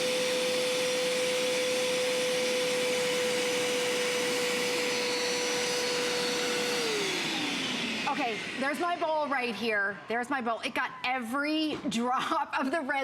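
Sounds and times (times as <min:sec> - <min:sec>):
carpet washer suction motor whining: 0:00.0 - 0:11.0.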